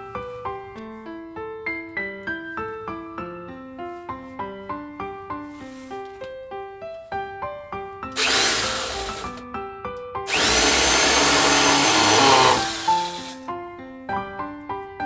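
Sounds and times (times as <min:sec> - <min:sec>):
piano music: 0:00.0 - 0:15.0
power drill whining: 0:08.2 - 0:09.4, 0:10.3 - 0:13.4.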